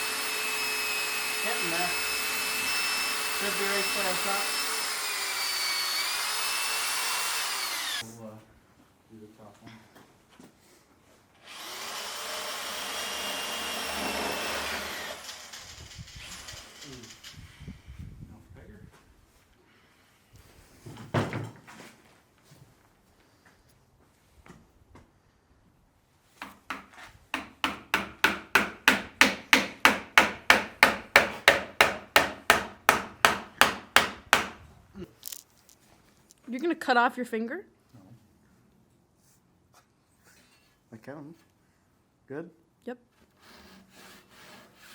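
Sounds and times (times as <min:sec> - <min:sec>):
electric drill whining: 0:00.0 - 0:08.0, 0:11.4 - 0:17.3
hammer striking wood: 0:26.4 - 0:34.6.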